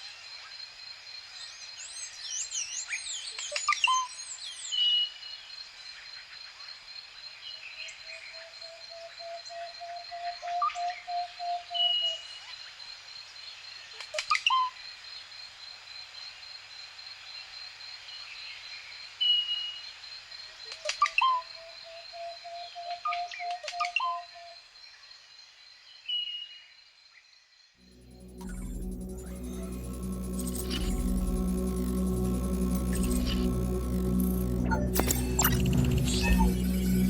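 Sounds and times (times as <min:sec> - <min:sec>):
high-pitched ringing tone: 0:27.8 - 0:37.0.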